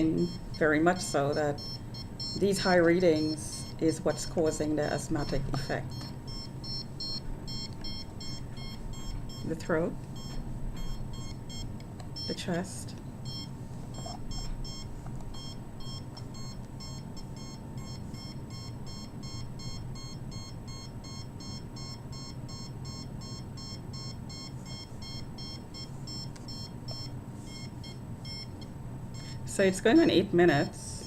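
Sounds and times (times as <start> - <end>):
rapid high-pitched electronic beeps: 5.2 - 9.6.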